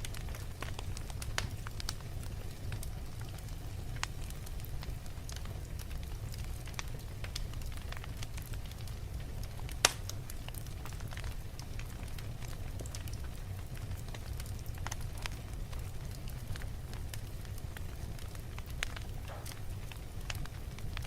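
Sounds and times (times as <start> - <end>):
sharp pops of fire: 0.0 - 2.0, 9.6 - 11.3, 18.2 - 21.0
wood fire crackling: 0.0 - 21.0.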